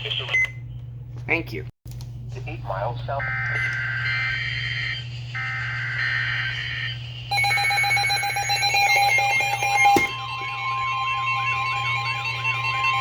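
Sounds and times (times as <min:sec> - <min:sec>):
steady warning tone: 0:03.2 - 0:13.0
alert receiver alarm beeping: 0:07.3 - 0:13.0.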